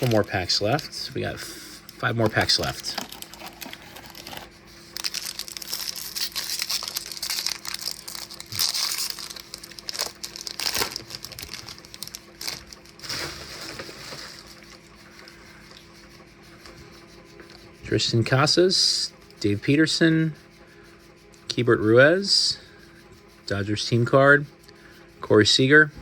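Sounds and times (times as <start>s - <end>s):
foil wrapper tearing and crinkling: 0.0s - 0.9s, 2.3s - 14.7s
faint steady hum: 0.0s - 26.0s.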